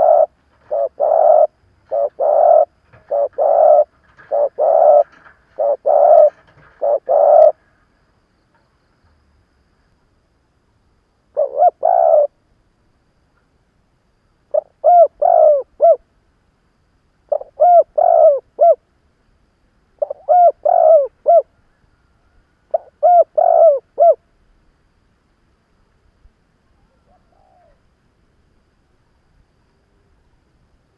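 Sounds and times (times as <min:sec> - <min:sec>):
dove cooing: 0:00.0 - 0:07.8, 0:11.4 - 0:12.4, 0:14.5 - 0:16.0, 0:17.3 - 0:18.8, 0:20.0 - 0:22.0, 0:22.7 - 0:24.2, 0:26.8 - 0:27.8.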